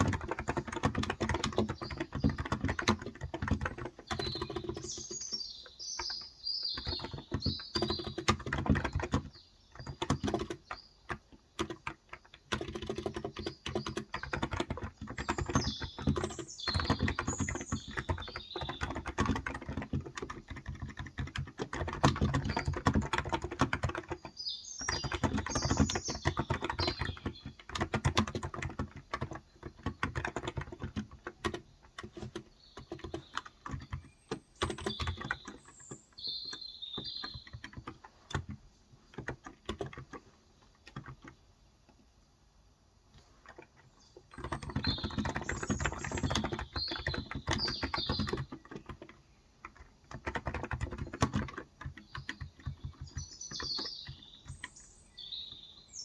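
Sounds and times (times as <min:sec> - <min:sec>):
birds chirping: 0:00.0 - 0:42.0, 0:43.2 - 0:56.0
typing on a keyboard: 0:00.0 - 0:42.2, 0:43.1 - 0:55.7.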